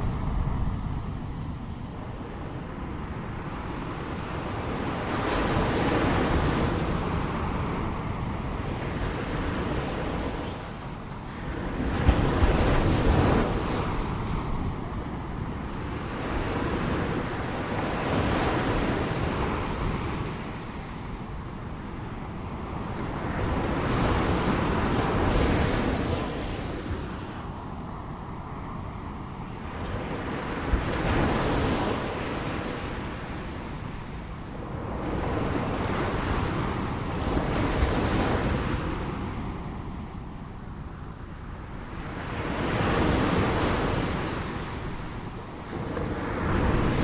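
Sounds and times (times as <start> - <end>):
ocean waves breaking on shore: 0.0 - 47.0.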